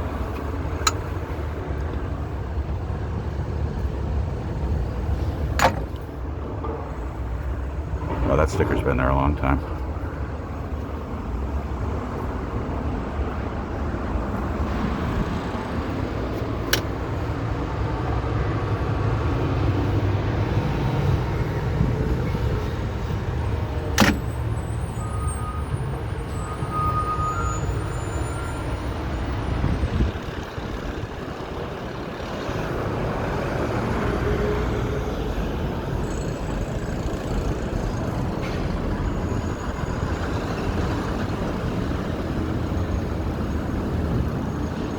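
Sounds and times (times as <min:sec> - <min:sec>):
street traffic rumble: 0:00.0 - 0:44.9.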